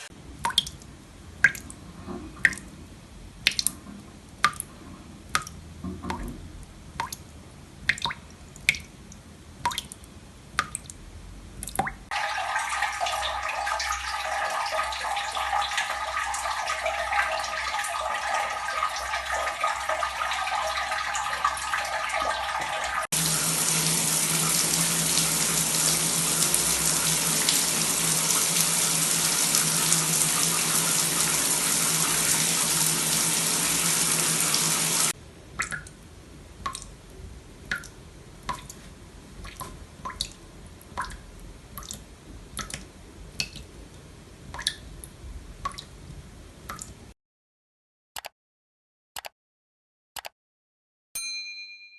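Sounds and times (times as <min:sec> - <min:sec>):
running water: 0:00.0 - 0:10.0, 0:11.6 - 0:36.0
water dripping: 0:00.1 - 0:46.0, 0:46.6 - 0:47.1.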